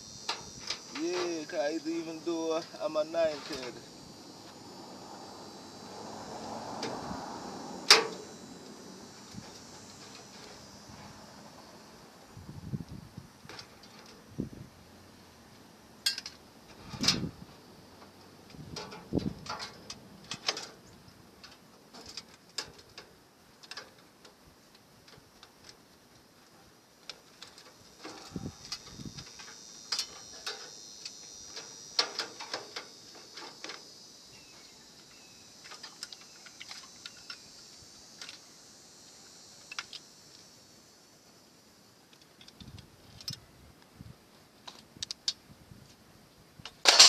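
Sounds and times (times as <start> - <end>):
faint high hiss: 0.0 - 47.0
tools and metal parts clicking: 16.0 - 16.4, 46.7 - 47.0.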